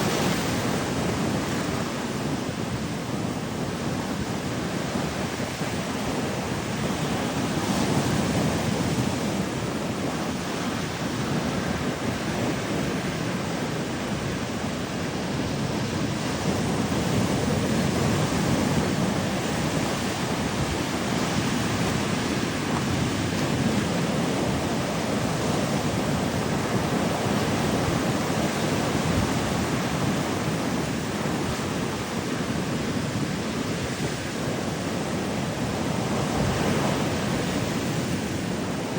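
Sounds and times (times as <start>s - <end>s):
ocean surf washing up beach: 0.0s - 38.9s.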